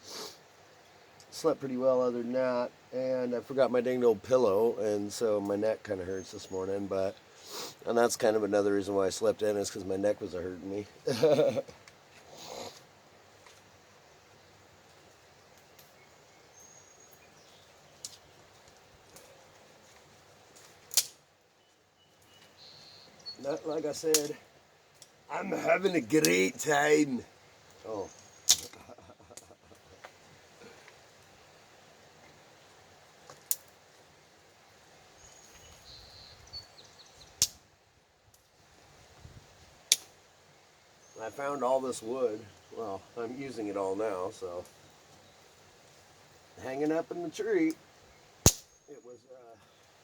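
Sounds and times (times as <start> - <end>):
campfire crackling: 0.0 - 50.0
bird chirping faintly: 21.5 - 24.5, 46.6 - 50.0.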